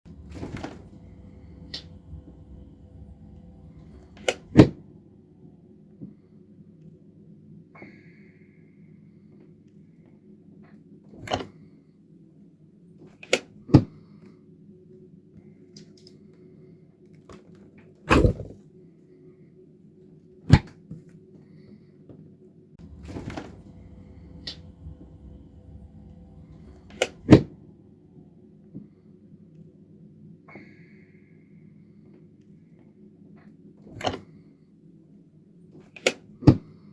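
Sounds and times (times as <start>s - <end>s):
faint steady hum: 0.1s - 7.5s, 22.8s - 30.2s.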